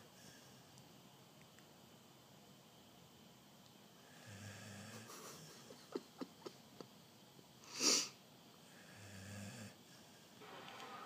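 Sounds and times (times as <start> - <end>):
dog snoring: 4.0 - 5.5, 8.7 - 9.8.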